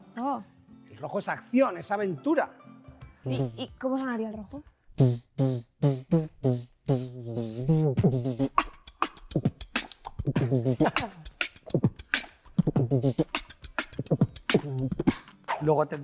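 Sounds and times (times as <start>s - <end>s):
beatboxing: 3.3s - 3.7s, 5.0s - 15.7s
sliding vocal tones: 5.0s - 15.6s.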